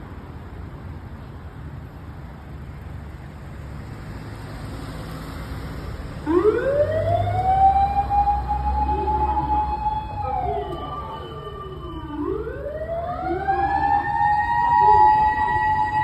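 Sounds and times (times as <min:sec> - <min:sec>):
fire engine motor siren: 0:06.2 - 0:16.0.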